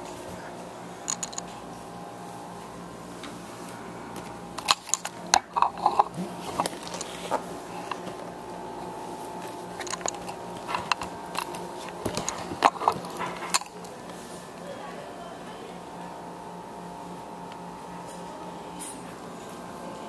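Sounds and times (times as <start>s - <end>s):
steady background hum: 0.0s - 20.0s
plastic parts clicking and tapping: 1.1s - 1.4s, 9.8s - 14.0s.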